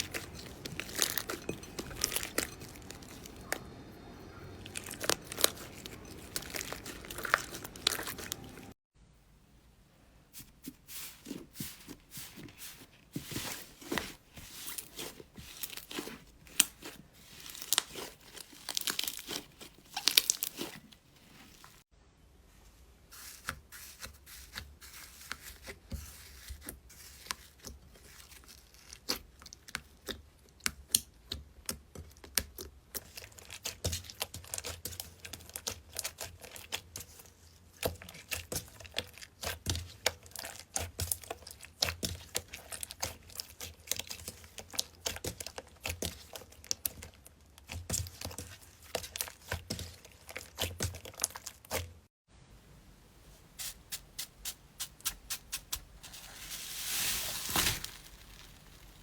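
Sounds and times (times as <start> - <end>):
slime crackling and popping: 0.0 - 3.6, 4.6 - 8.7, 14.7 - 20.8, 54.2 - 59.0.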